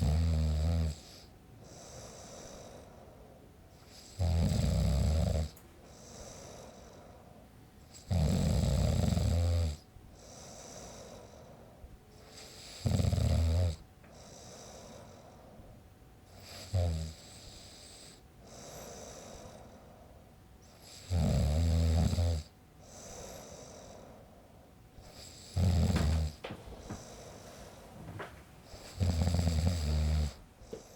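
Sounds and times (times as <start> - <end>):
man snoring: 0.0 - 2.8, 3.9 - 6.9, 7.9 - 11.1, 12.3 - 15.2, 16.4 - 19.6, 20.8 - 24.0, 25.1 - 27.4, 28.7 - 30.9
quiet breathing: 1.0 - 4.3, 5.3 - 8.1, 9.8 - 13.1, 13.8 - 21.2, 22.8 - 30.9.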